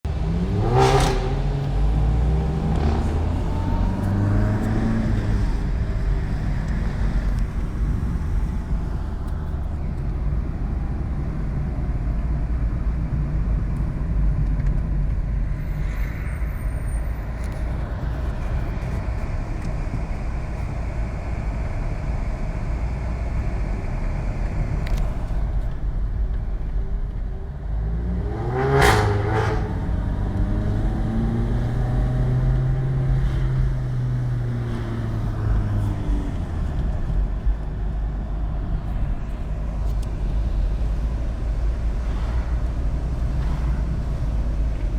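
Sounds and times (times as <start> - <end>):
car engine revving: 0.1 - 9.8, 24.4 - 44.9
exhaust crackles and pops: 23.2 - 27.8.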